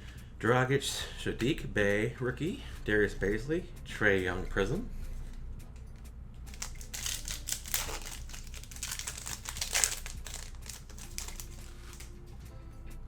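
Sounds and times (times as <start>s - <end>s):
plastic wrapper tearing and crinkling: 6.5s - 12.1s.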